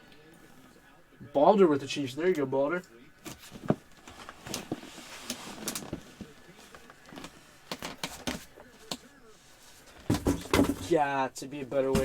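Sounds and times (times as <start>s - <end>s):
packaging being handled: 3.3s - 9.0s.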